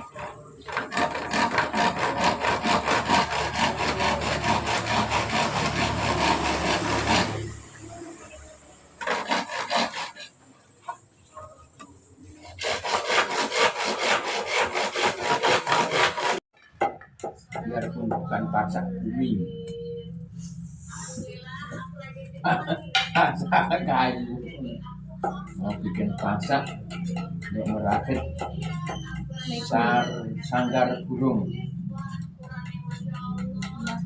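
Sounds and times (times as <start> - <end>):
hand tool shaping wood: 0.0 - 7.6, 9.0 - 11.0, 12.4 - 16.4, 32.4 - 34.0.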